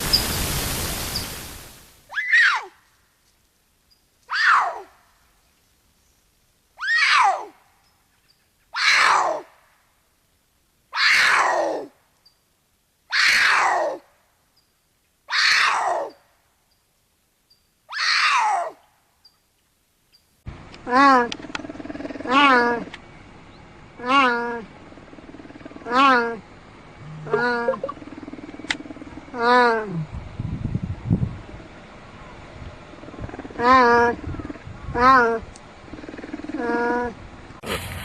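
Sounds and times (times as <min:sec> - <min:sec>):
burst of hiss: 0:00.0 - 0:02.1
harsh animal cries: 0:02.1 - 0:02.8, 0:04.3 - 0:04.9, 0:06.8 - 0:07.5, 0:08.7 - 0:09.5, 0:10.9 - 0:11.9, 0:13.1 - 0:14.0, 0:15.3 - 0:16.2, 0:17.9 - 0:18.8, 0:20.9 - 0:22.9, 0:24.0 - 0:26.4, 0:27.0 - 0:30.1, 0:33.0 - 0:37.2.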